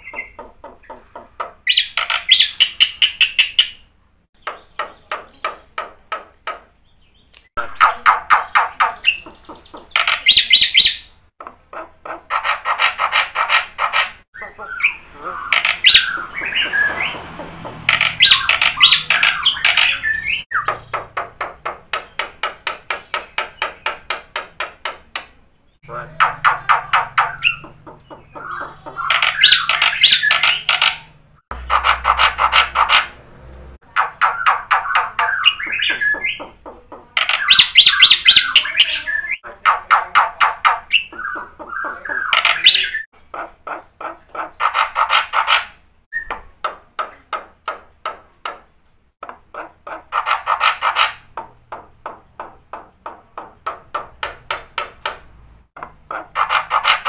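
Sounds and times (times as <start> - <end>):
starling chattering song: 7.6 - 24.3, 25.8 - 33.2, 33.9 - 45.6, 55.8 - 57.0.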